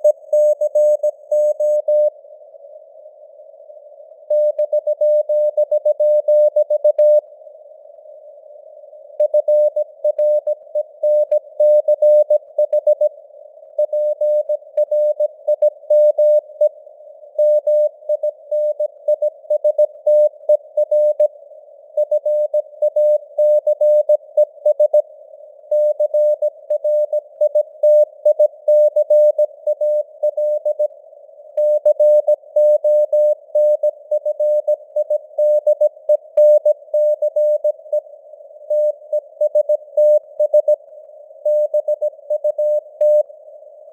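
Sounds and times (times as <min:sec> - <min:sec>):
morse code beeps: 0:00.0 - 0:02.1, 0:09.2 - 0:13.1, 0:31.6 - 0:37.8, 0:38.7 - 0:40.8, 0:41.5 - 0:43.2.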